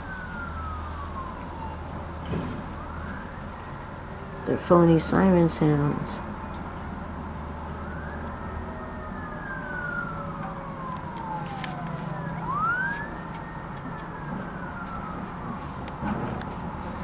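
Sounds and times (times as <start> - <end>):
emergency vehicle siren wailing: 0.0 - 17.0.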